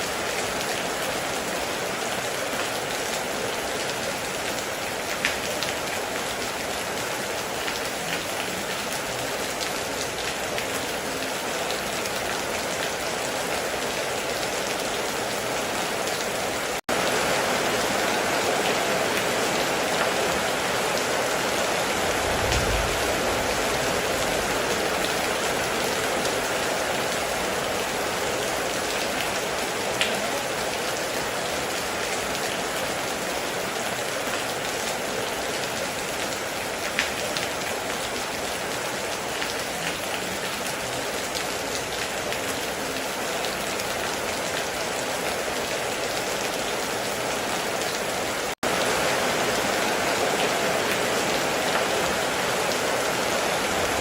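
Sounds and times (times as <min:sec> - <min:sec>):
heavy rain falling: 0:00.0 - 0:54.0
short low rumble: 0:22.1 - 0:24.2.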